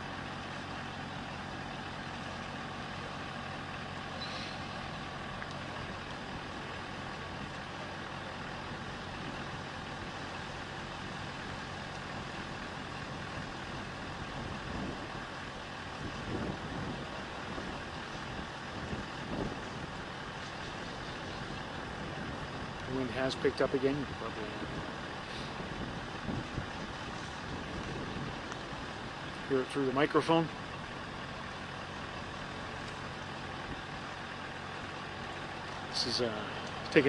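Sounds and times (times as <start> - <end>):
pump engine droning: 0.0 - 37.0
wind buffeting microphone: 13.1 - 29.4.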